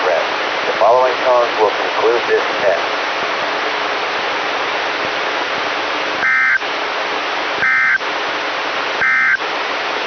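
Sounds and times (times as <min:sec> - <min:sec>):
steady radio hiss: 0:00.0 - 0:10.0
warbling digital tone bursts: 0:06.2 - 0:06.6, 0:07.6 - 0:08.0, 0:09.0 - 0:09.4.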